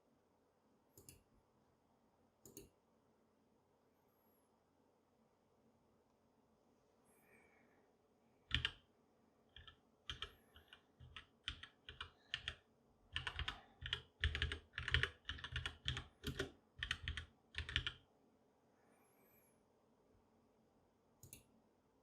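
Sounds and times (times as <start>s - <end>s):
typing on mechanical keyboard: 8.5s - 8.8s, 9.5s - 18.0s.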